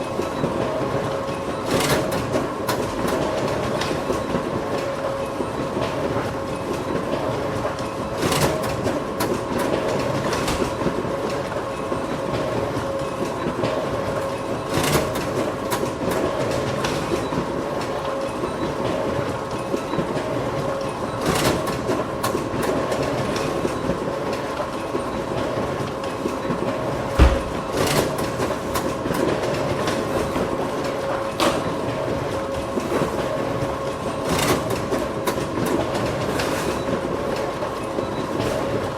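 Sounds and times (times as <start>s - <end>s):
photocopier running: 0.0s - 38.9s
low thump: 27.2s - 27.6s.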